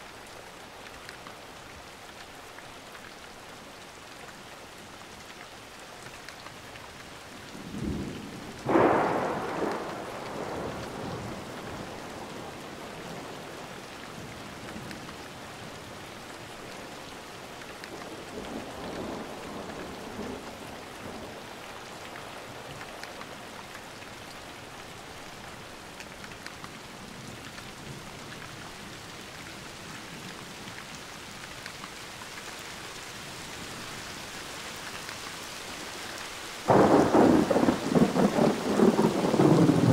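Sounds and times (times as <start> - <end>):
steady rain falling: 0.0 - 39.9
thunder clap and roll: 8.7 - 11.2, 36.7 - 39.9.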